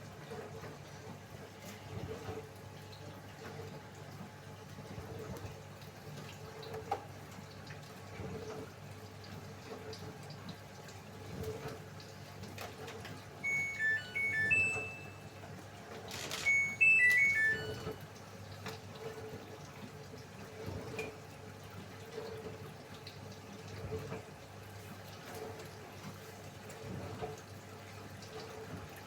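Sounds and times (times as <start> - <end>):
water trickling in machine: 0.0 - 29.0
washing machine melody beeps: 13.3 - 18.2.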